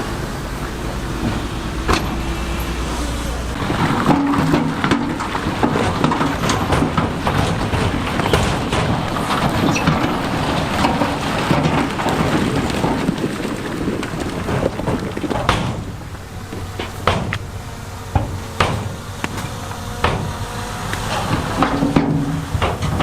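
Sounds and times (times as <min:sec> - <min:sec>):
diesel engine running: 0:00.0 - 0:23.0
stones rumbling and clattering: 0:03.6 - 0:17.5.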